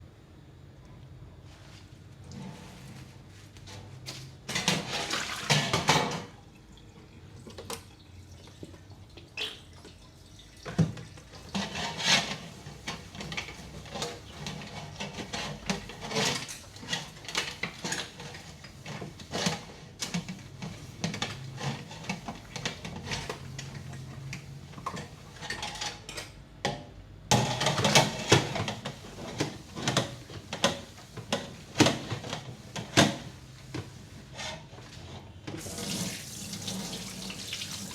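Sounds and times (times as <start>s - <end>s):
water splashing and dripping: 35.6s - 37.9s.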